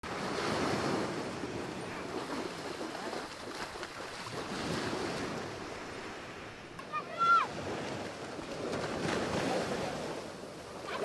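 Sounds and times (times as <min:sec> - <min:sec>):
surf: 0:00.0 - 0:11.0
wind: 0:00.0 - 0:11.0
faint voices: 0:06.1 - 0:07.8, 0:08.9 - 0:11.0.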